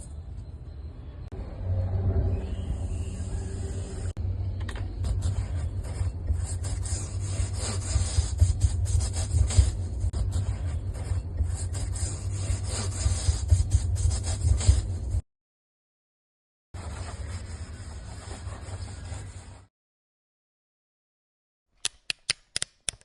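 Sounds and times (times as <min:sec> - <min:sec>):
rubbing and scrubbing strokes: 0:05.0 - 0:15.2, 0:16.8 - 0:19.7.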